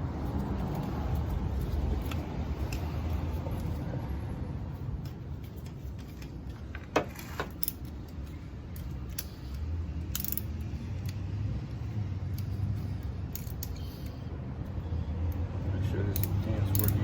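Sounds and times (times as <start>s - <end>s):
metallic clicks of hand tools: 7.4s - 11.2s, 12.3s - 14.2s, 16.1s - 17.0s.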